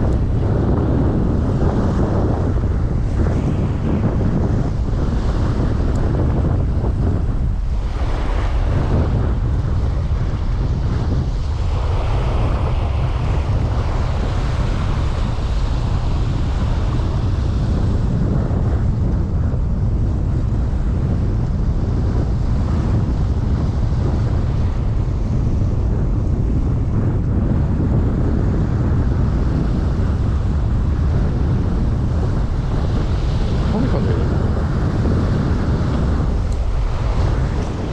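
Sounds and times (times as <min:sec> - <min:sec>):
wind buffeting microphone: 0:00.0 - 0:37.9
waves rushing on shore: 0:07.4 - 0:17.9, 0:32.0 - 0:37.9.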